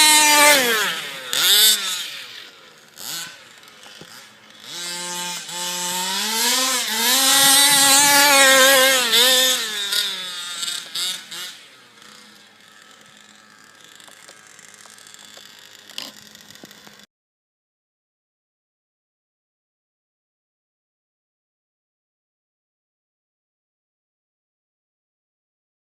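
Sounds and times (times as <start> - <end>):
small two-stroke engine revving: 0.0 - 17.1.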